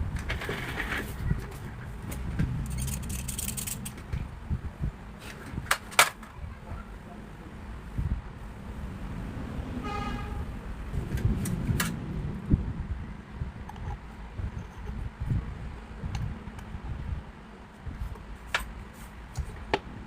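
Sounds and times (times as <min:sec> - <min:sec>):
steady low rumble: 0:00.0 - 0:05.7, 0:06.3 - 0:20.0
vehicle horn beep: 0:09.8 - 0:10.5.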